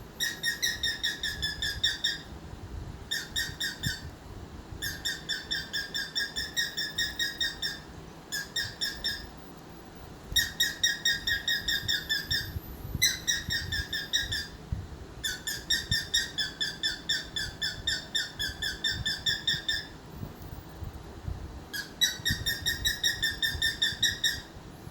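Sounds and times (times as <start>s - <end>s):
cockatiel chattering and whistling: 0.2s - 2.3s, 3.1s - 4.1s, 4.8s - 9.3s, 10.4s - 14.6s, 15.2s - 20.0s, 21.7s - 24.5s.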